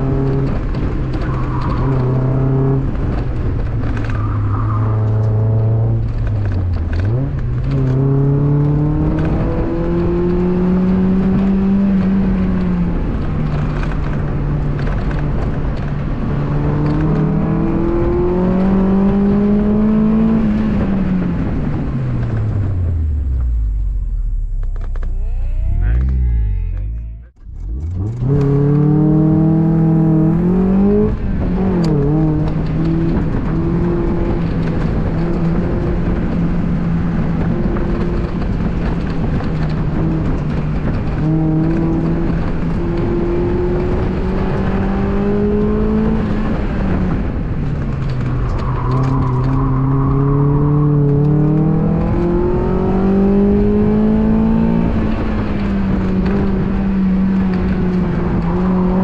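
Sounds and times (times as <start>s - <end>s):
car engine pulling hard: 0.0s - 59.0s.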